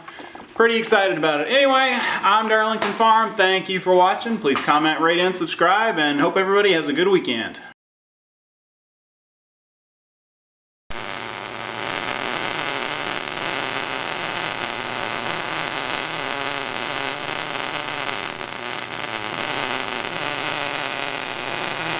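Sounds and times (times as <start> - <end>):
steady hissing: 10.9 - 21.9.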